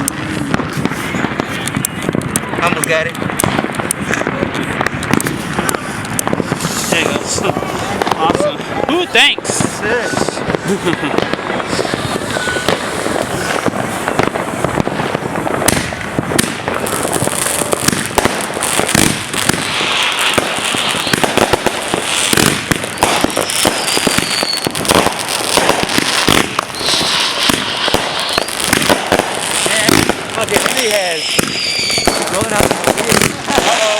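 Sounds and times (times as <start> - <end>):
firework crackling and popping: 0.0 - 33.9
falling whistle: 12.3 - 12.8, 23.4 - 24.8, 26.8 - 27.4, 31.1 - 32.3.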